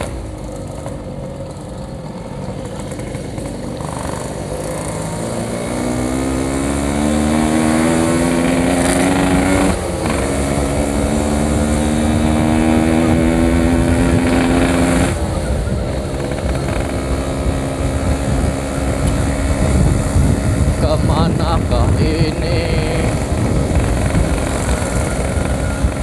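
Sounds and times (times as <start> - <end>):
low wind rumble: 0.0 - 26.0
two-stroke motorcycle engine revving: 0.0 - 26.0.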